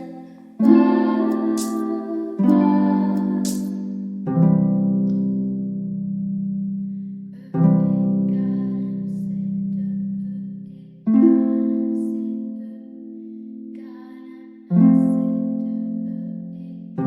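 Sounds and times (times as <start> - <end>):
slow sustained chords: 0.0 - 5.2.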